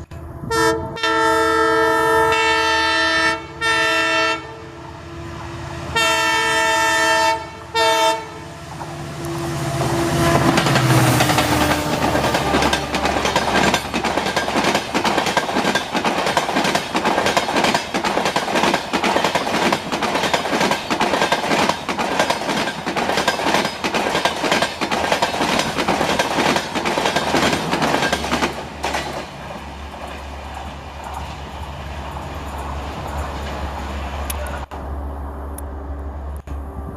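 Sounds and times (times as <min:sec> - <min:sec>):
low train rumble: 0:00.0 - 0:36.9
train wheels clattering over rail joints: 0:10.3 - 0:31.5.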